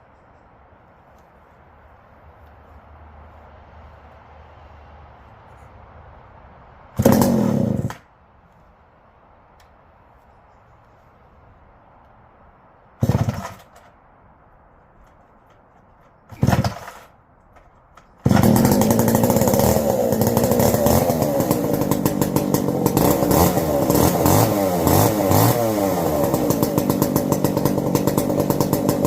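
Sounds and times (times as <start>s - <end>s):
chainsaw engine running: 7.0s - 8.0s, 13.0s - 13.8s, 16.3s - 17.1s, 18.2s - 29.0s.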